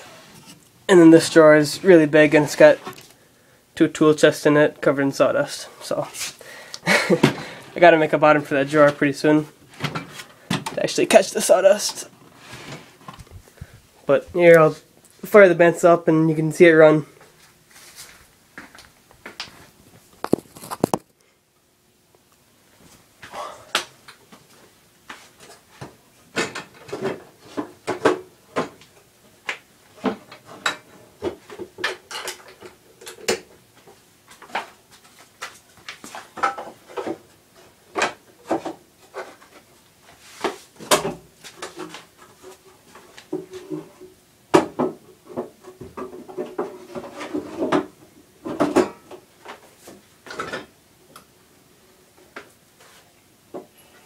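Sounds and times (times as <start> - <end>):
faint steady hum: 0.0 - 54.0
hard objects knocking and clattering: 20.2 - 21.1.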